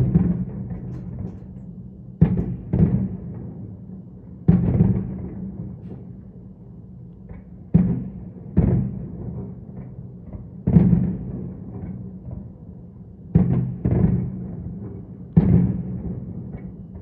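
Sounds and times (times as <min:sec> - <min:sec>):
fireworks booming: 0:00.0 - 0:06.6, 0:07.2 - 0:12.5, 0:13.3 - 0:17.0.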